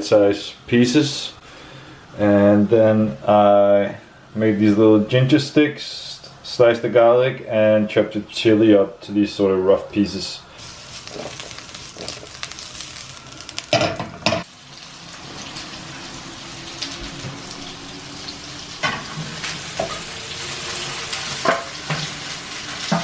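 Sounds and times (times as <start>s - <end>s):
vegetables sizzling in a pan: 10.5s - 23.0s.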